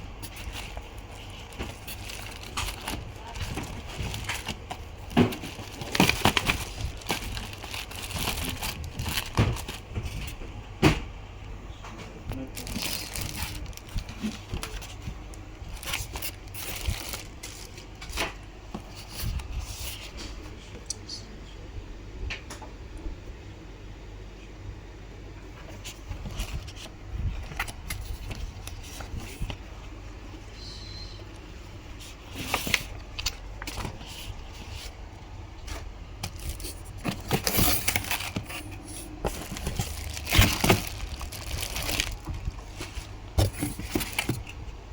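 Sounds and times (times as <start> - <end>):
packaging crinkling: 0.0 - 10.4, 12.3 - 19.6, 31.3 - 35.1, 35.7 - 44.6
steady low hum: 0.0 - 44.9
clicks and knocks of handling: 41.6 - 44.6.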